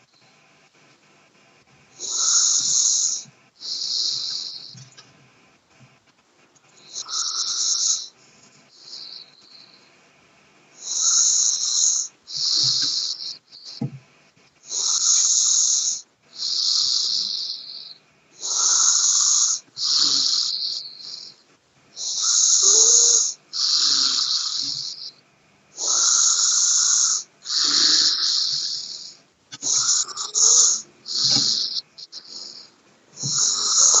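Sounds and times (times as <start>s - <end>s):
person snoring: 2.0s - 4.7s, 6.8s - 8.1s, 14.7s - 21.3s, 22.0s - 25.1s, 25.8s - 34.0s.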